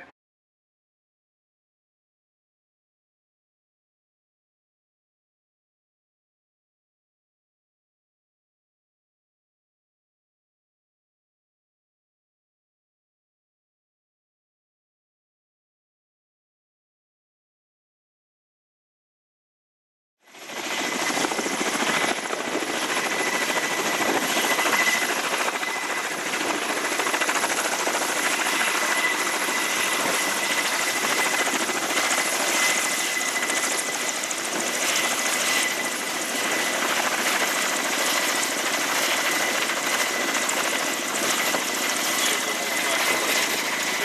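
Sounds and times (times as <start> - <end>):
helicopter rotors running: 20.3 - 44.0
high turbine whine: 20.4 - 44.0.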